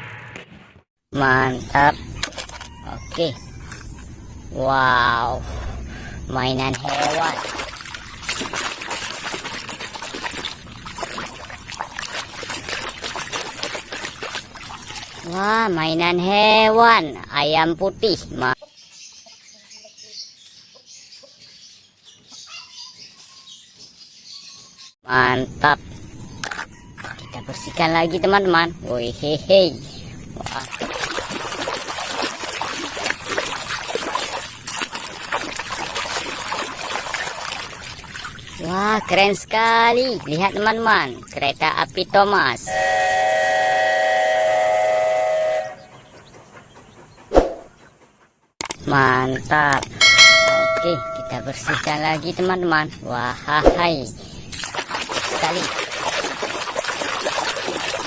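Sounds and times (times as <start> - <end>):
water splashing and trickling: 4.8 - 16.5, 30.2 - 42.5, 50.0 - 52.6, 54.4 - 58.0.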